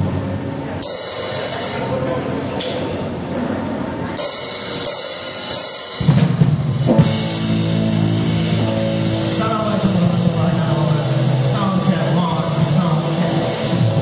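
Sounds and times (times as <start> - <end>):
cymbal hits: 0.8 - 2.1, 4.2 - 9.5
full band playing: 0.8 - 2.1, 4.2 - 14.0.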